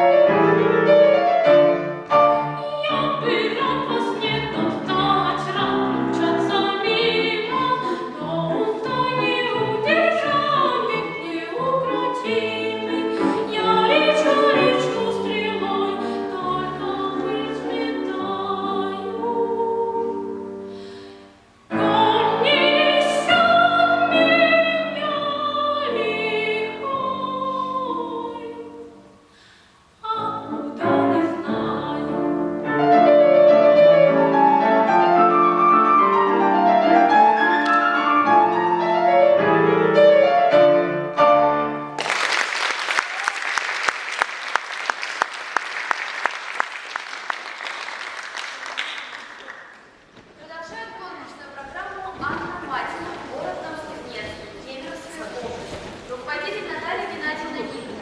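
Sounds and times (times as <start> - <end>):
piano accompaniment: 0.0 - 29.1, 30.1 - 42.1.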